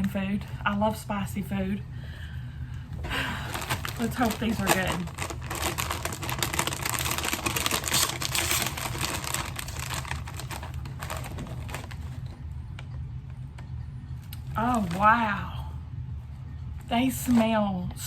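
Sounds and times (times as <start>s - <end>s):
chip bag crinkling: 3.1s - 12.4s, 14.3s - 15.3s.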